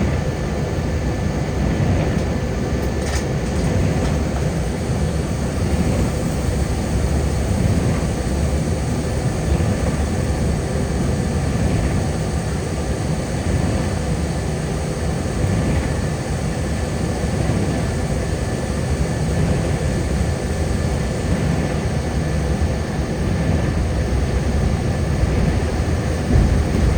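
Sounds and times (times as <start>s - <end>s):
car tyre and engine rumble: 20.9s - 26.9s.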